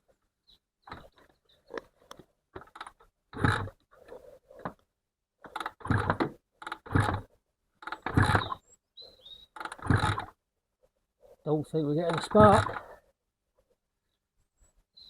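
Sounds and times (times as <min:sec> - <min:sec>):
engine turning over: 0:02.6 - 0:03.8, 0:05.5 - 0:08.6, 0:09.6 - 0:10.4, 0:12.1 - 0:12.9
motorcycle kickstarter kicks: 0:05.4 - 0:08.6, 0:09.6 - 0:10.3.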